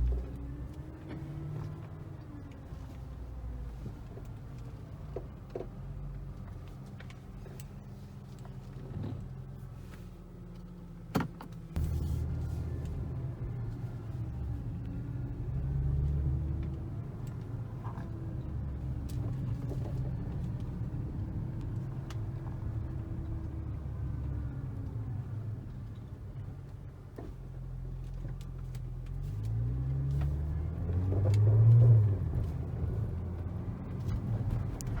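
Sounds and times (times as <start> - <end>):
car engine accelerating: 11.8 - 35.0.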